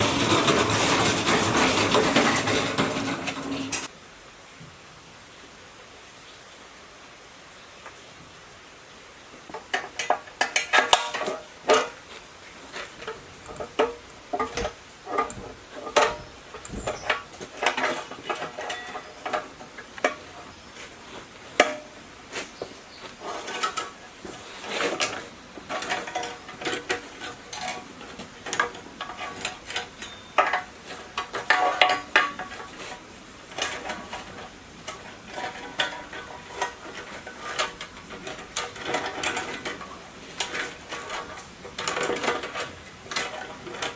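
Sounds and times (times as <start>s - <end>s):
metal tools clanking: 0.0s - 3.9s, 9.5s - 43.9s.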